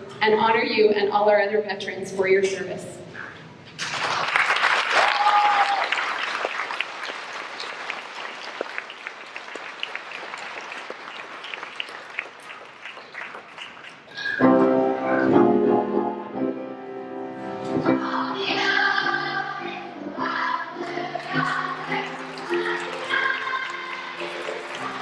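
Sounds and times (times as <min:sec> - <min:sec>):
audience applauding: 0:03.8 - 0:14.4, 0:21.2 - 0:25.0
instrumental accompaniment music: 0:20.3 - 0:25.0.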